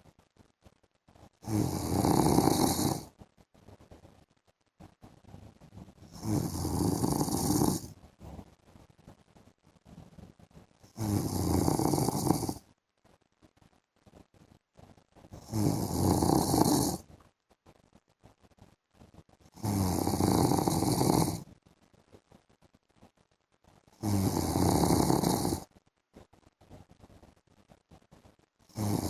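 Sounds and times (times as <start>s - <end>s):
man snoring: 1.4s - 3.1s, 6.1s - 7.9s, 10.9s - 12.6s, 15.4s - 17.0s, 19.6s - 21.4s, 24.0s - 25.7s, 28.7s - 29.0s
quiet breathing: 1.4s - 4.1s, 5.3s - 8.5s.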